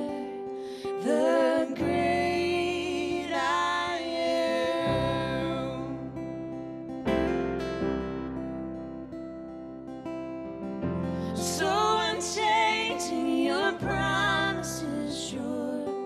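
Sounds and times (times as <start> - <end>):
person singing: 0.0 - 6.2, 11.3 - 16.0
strummed acoustic guitar: 0.0 - 15.9.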